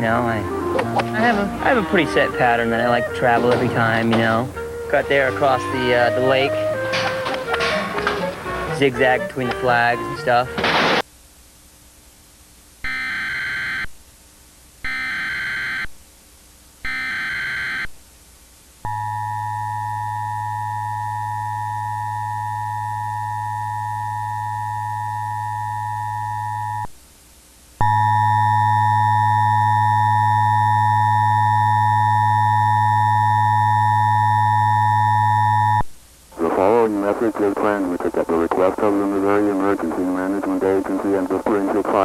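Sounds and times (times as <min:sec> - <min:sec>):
electronic attention tone: 0:18.9 - 0:26.9, 0:27.8 - 0:35.8.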